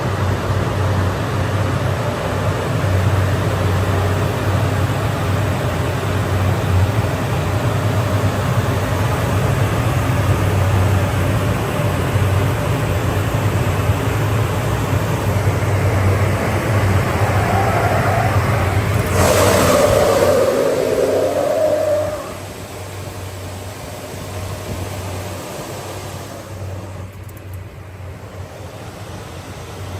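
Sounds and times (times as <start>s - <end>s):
even hiss: 15.8s - 23.0s.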